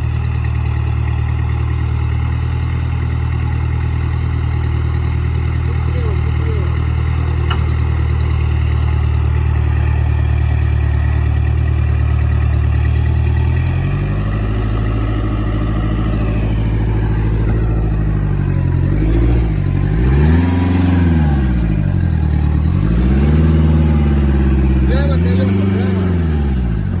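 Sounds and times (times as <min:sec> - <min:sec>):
engine running under load: 0:00.0 - 0:27.0.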